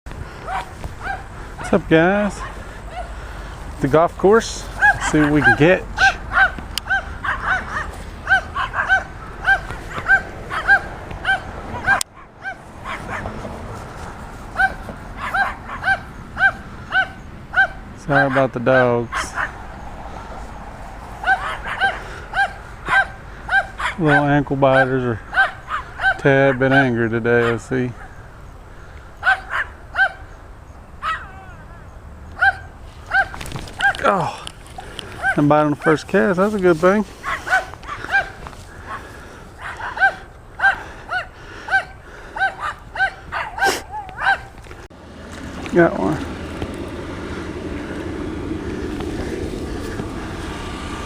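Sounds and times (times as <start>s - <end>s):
small dogs yapping: 0.4s - 3.2s, 4.6s - 19.8s, 21.1s - 28.3s, 29.2s - 30.4s, 31.0s - 36.0s, 37.1s - 44.6s.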